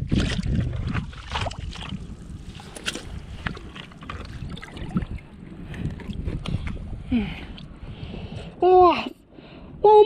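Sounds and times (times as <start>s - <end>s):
sea water lapping on rocks: 0.0s - 6.9s
wind rumble on microphone: 0.0s - 10.0s.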